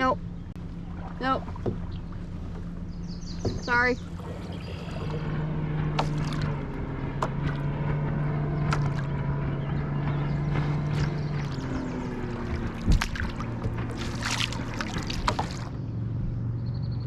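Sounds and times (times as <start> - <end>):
motorboat engine running: 0.0 - 17.0.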